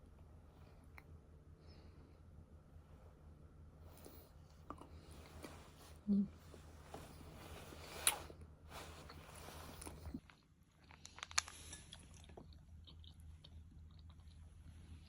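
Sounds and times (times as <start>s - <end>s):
person chewing food: 7.0s - 15.0s.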